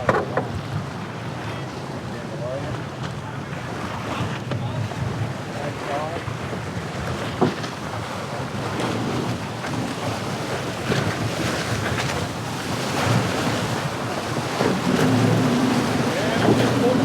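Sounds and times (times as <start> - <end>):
waves against the hull: 0.0 - 17.0
wind and water rushing: 0.0 - 17.0
wind buffeting microphone: 6.3 - 17.0.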